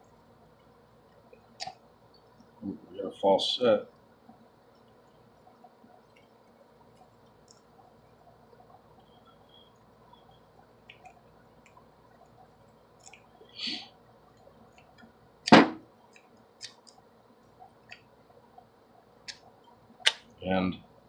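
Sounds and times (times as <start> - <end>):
loud sharp knock: 15.5 - 15.8.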